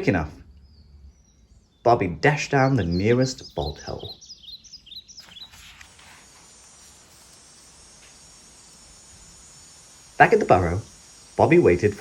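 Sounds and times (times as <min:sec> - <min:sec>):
crickets chirring: 0:00.0 - 0:12.0.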